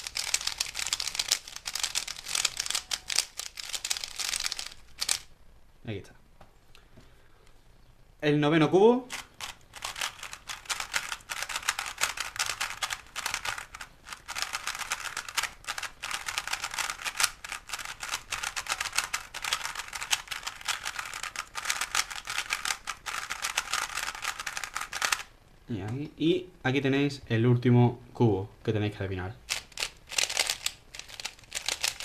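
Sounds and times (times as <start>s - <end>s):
plastic cube pieces clicking: 0.0s - 5.3s, 9.1s - 25.3s, 29.5s - 32.0s.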